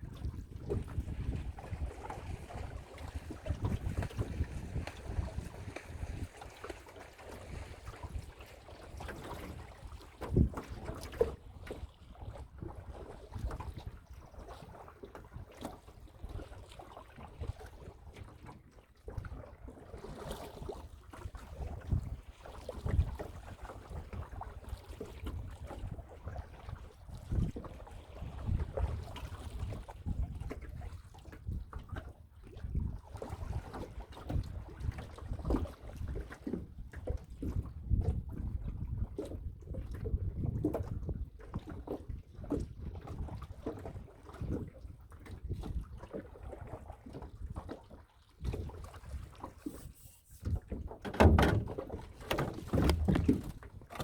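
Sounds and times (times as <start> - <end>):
wind buffeting microphone: 0.0 - 6.3, 50.4 - 54.0
water splashing around boat: 0.0 - 54.0
small knocks and clicks: 49.7 - 54.0.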